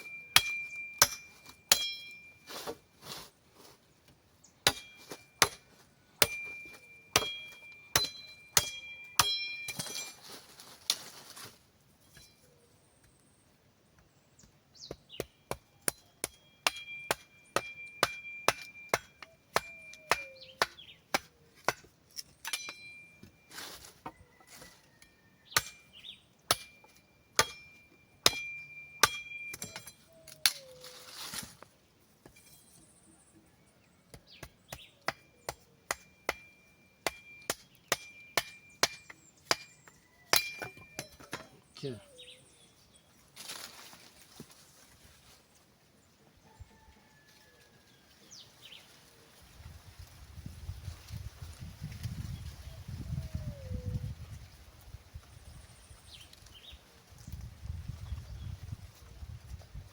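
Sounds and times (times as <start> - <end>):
metal blade chopping sticks: 22.4 - 23.1.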